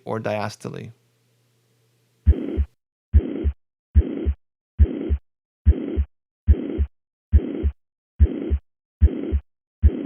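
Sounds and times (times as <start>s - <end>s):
heartbeat thumps: 2.3s - 10.0s
high-pitched heart murmur: 2.3s - 10.0s.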